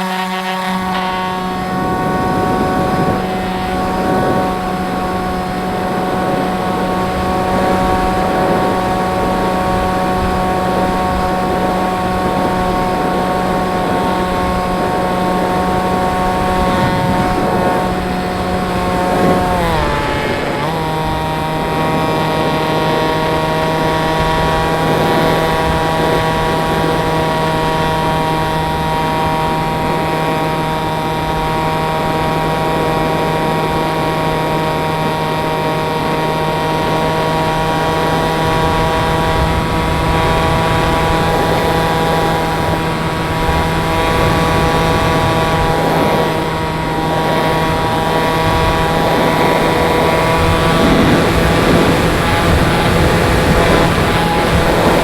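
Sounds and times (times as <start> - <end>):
model plane motor whine: 0.0 - 55.0
wind noise: 0.0 - 55.0.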